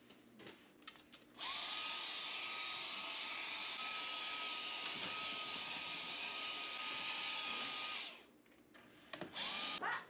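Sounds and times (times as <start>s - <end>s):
electric hair clippers whining: 1.4s - 8.2s, 9.4s - 9.8s.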